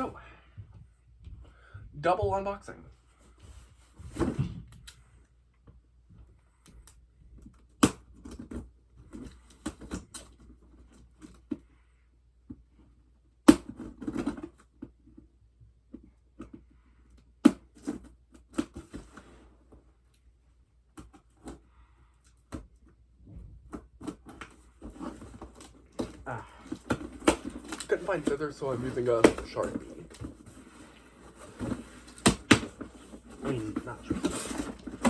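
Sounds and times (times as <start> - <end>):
packages scraping and rustling: 23.8 - 35.0.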